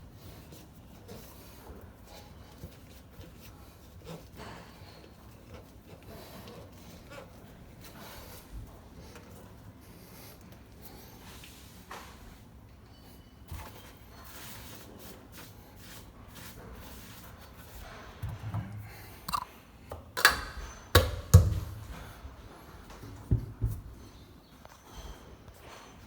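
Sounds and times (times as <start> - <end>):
clicks and knocks of tools: 18.2 - 21.4.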